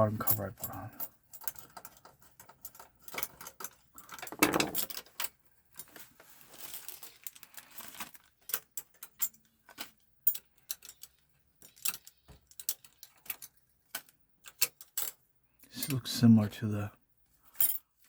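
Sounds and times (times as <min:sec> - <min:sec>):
metal screws clinking: 0:00.3 - 0:05.9, 0:08.4 - 0:15.2.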